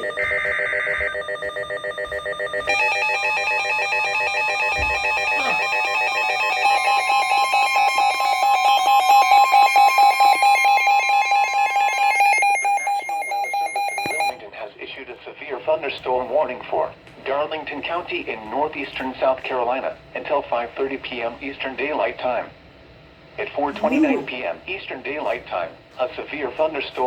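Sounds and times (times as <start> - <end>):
pulsing multi-tone alarm: 0.0 - 14.4.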